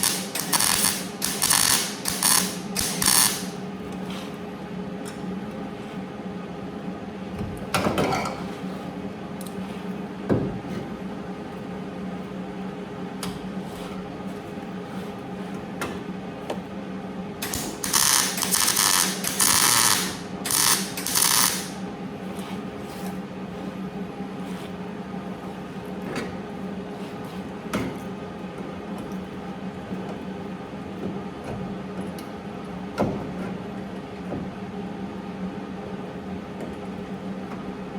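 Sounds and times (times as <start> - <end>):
high-speed power tool on metal: 0.0 - 3.6, 17.4 - 21.8
steady hum: 0.0 - 31.4.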